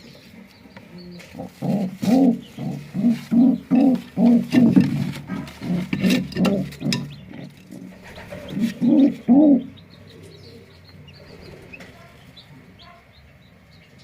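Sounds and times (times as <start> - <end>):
pigeon cooing: 0.9 - 13.0.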